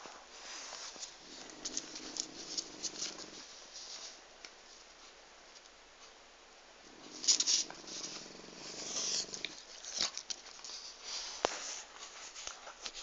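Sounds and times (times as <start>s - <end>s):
pet snoring: 1.2s - 3.4s, 6.8s - 9.6s.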